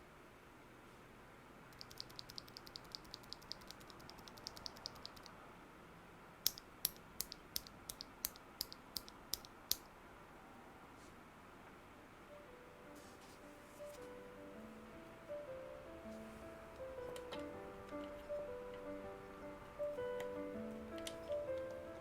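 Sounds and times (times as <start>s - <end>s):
keyboard switches clacking: 1.8s - 5.3s, 6.4s - 9.8s, 16.7s - 22.0s.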